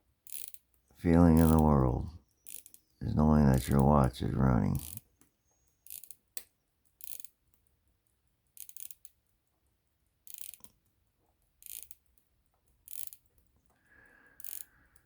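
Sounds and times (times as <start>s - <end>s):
pocket watch movement clicking: 0.3s - 0.7s, 4.7s - 5.0s, 7.0s - 7.3s, 8.6s - 9.1s, 10.3s - 10.7s, 11.6s - 12.0s, 12.9s - 13.3s, 14.4s - 14.7s.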